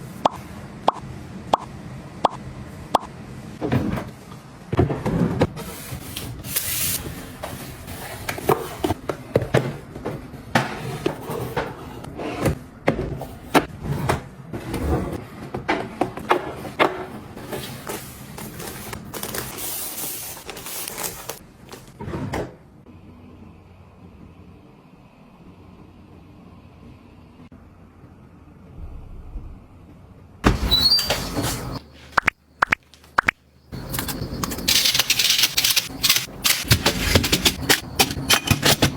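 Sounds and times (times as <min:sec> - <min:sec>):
hands handling small objects: 0:31.6 - 0:38.9.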